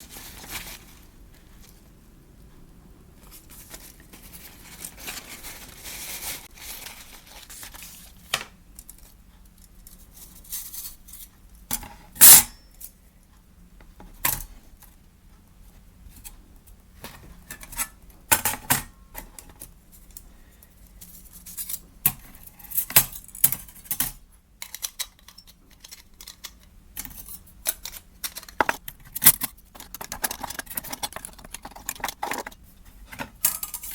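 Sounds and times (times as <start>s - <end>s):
metal parts clinking and rattling: 22.6s - 33.9s.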